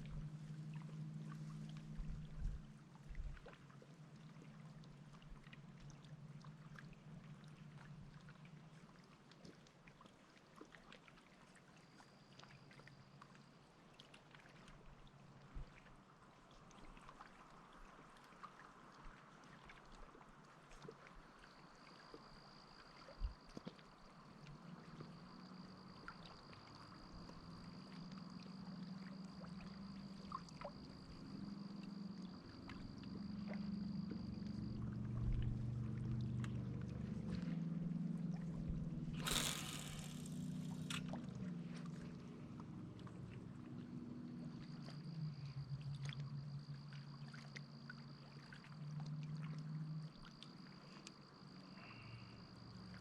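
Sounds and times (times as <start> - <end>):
distant motorboat engine droning: 0.0 - 3.0, 24.7 - 46.0.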